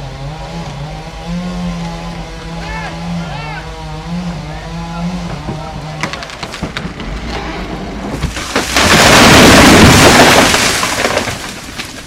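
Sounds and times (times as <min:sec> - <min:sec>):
tree cracking and snapping: 0:05.1 - 0:12.0
tree crashing to ground: 0:05.1 - 0:12.0.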